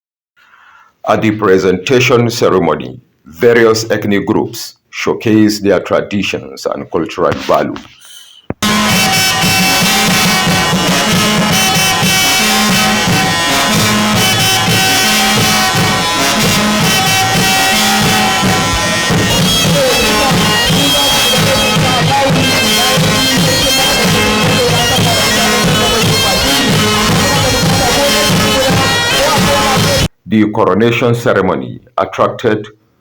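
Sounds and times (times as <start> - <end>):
droning bagpipe-like wind instrument: 8.6 - 30.1
fast steady drumming: 8.6 - 30.1.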